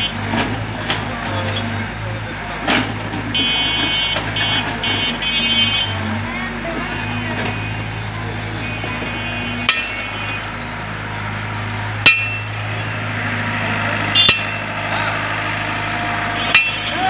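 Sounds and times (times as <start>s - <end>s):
diesel engine running: 0.0s - 17.0s
sharp metallic clanks: 9.6s - 10.6s, 11.9s - 13.0s, 14.1s - 14.7s, 15.6s - 17.0s.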